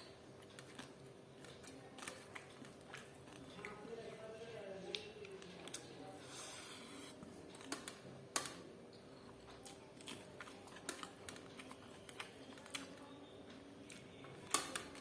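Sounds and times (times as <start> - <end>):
chewing crunchy food: 0.0 - 4.2, 9.2 - 15.0.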